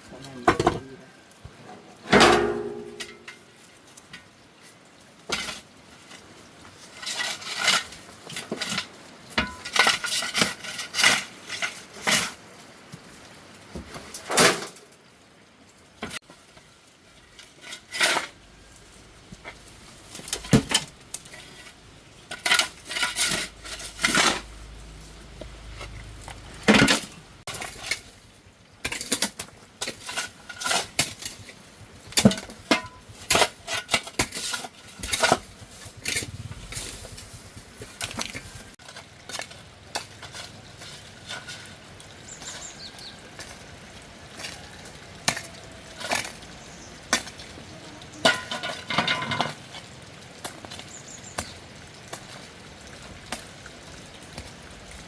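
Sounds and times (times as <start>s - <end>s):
metal tool digging stony soil: 6.9s - 12.4s, 17.2s - 28.1s, 28.8s - 43.2s.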